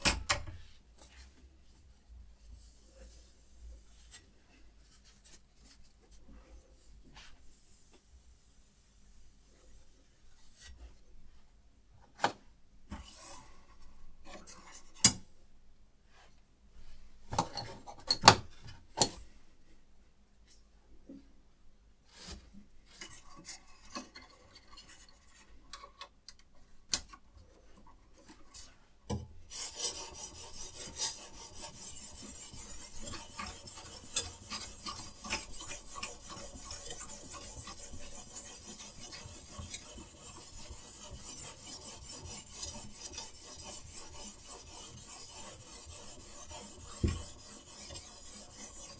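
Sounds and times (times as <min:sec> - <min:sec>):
sharpening stone scraping knife blade: 0:29.8 - 0:48.9.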